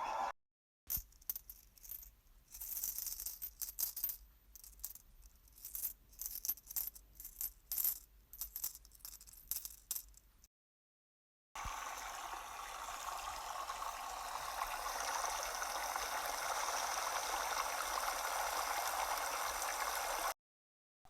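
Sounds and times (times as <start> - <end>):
rattling and clinking: 0.9 - 10.3.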